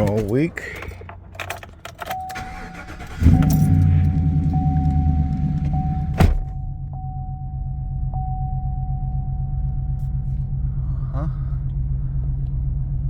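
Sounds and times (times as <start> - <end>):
truck engine starting and idling: 0.0 - 13.0
steady high tone: 2.3 - 10.6.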